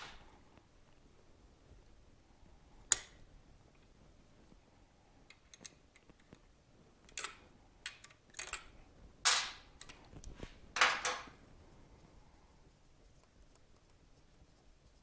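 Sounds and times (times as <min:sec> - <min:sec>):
metal tools clicking and clinking: 0:07.1 - 0:08.7, 0:09.3 - 0:10.0, 0:10.8 - 0:11.3.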